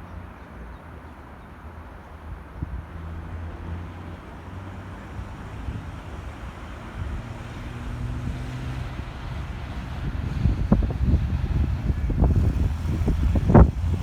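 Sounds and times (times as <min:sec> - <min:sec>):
locomotive engine humming: 0:03.2 - 0:14.0.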